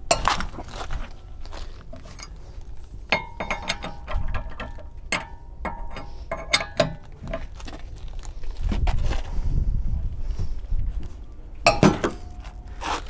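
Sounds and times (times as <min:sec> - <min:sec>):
lug wrench metallic clicks: 0:03.1 - 0:07.5.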